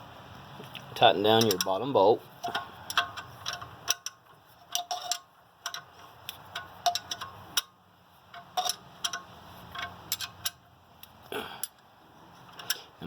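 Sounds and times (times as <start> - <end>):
ratchet wrench clicking: 2.4 - 11.8.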